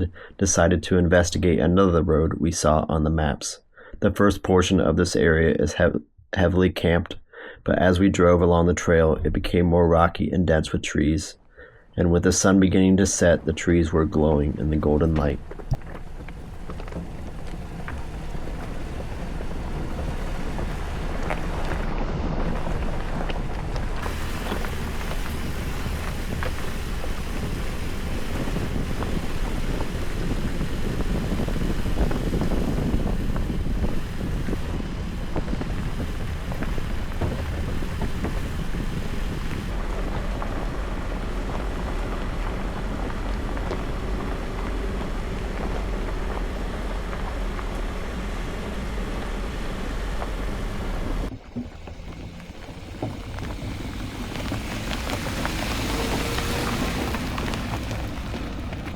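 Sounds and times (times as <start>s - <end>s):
engine and tyre rumble: 7.7s - 58.9s
wind on microphone: 12.8s - 58.9s
stones knocking and crunching: 14.8s - 58.9s.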